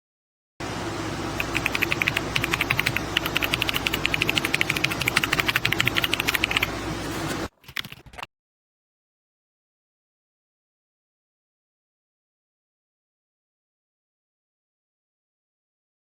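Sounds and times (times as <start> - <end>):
steady hum: 0.6 - 8.2
mechanical keyboard typing: 1.4 - 6.7, 7.6 - 8.3.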